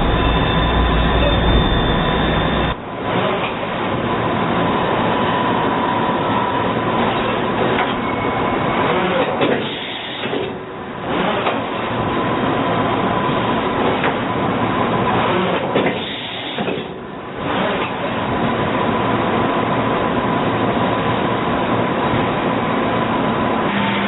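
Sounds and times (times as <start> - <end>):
faint machine whine: 0.0 - 3.0, 4.1 - 8.9
machine running: 0.0 - 12.9.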